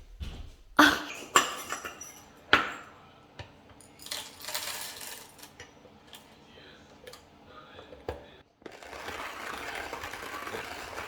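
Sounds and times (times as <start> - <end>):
dishes clinking: 0.8 - 3.0.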